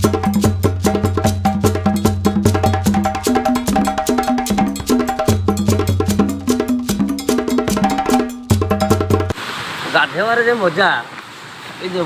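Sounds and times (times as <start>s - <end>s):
fast percussive beat with bass line: 0.0s - 9.4s.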